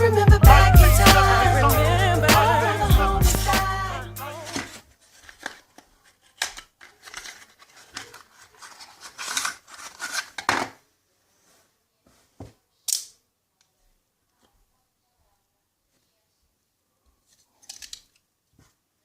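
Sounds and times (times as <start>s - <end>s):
sharp clicks and scrapes: 4.5s - 10.5s.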